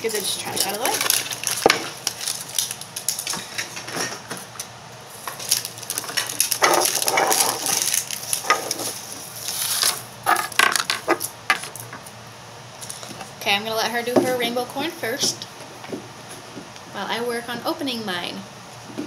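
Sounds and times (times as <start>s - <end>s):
plastic packaging crinkling: 0.0s - 12.0s.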